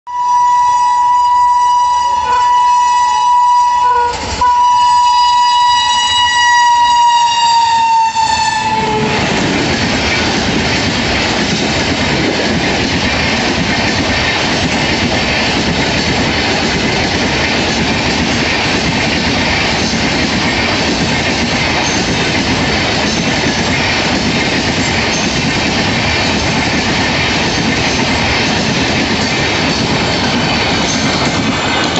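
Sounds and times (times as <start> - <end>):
locomotive horn blast: 0.1 - 9.3
train coaches rushing past: 0.2 - 31.9.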